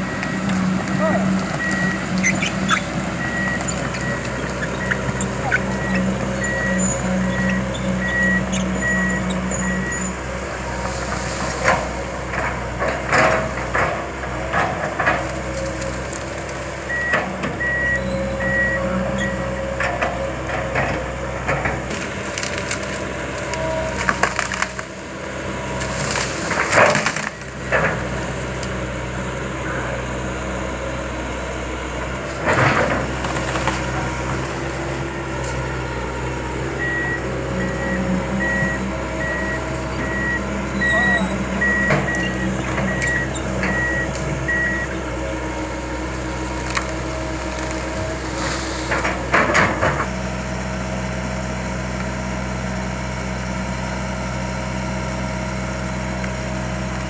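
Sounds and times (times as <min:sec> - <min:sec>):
wood cracking and splintering: 0:00.0 - 0:10.0, 0:21.6 - 0:28.8, 0:32.3 - 0:35.6, 0:45.4 - 0:50.1
backup alarm beeping: 0:00.0 - 0:10.3, 0:36.6 - 0:45.0
excavator diesel engine running: 0:00.0 - 0:57.0.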